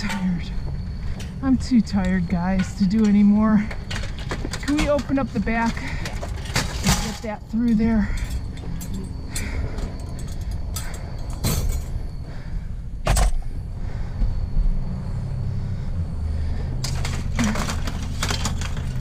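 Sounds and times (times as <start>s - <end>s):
steady low rumble: 0.0s - 17.3s
scrap metal knocks and clanks: 1.0s - 12.0s, 16.8s - 19.0s.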